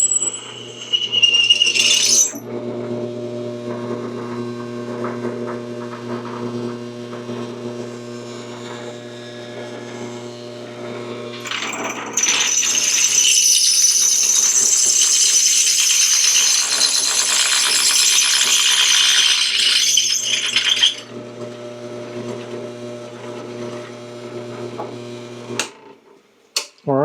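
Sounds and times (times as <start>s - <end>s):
drill bit screeching through metal: 0.0s - 2.5s, 11.3s - 21.2s
drill press motor humming: 0.0s - 25.7s.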